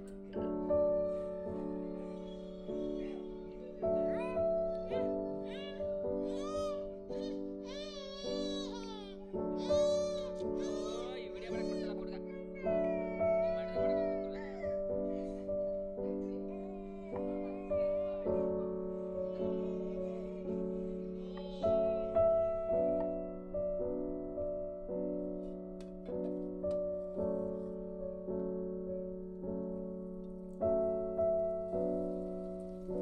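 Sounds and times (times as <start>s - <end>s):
soft piano chords: 0.0s - 33.0s.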